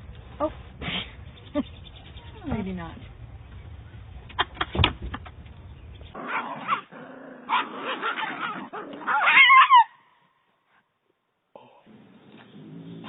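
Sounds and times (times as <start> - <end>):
dog barking and yipping: 6.2 - 6.9, 7.5 - 10.0.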